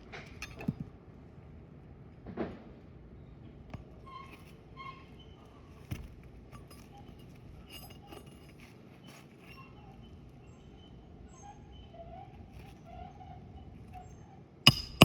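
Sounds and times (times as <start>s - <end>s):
faint light clinks: 5.8s - 9.7s.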